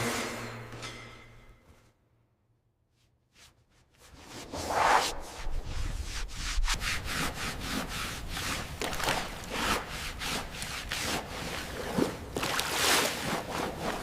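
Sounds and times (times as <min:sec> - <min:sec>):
rubbing or scraping strokes: 0:02.9 - 0:12.2, 0:12.8 - 0:14.0.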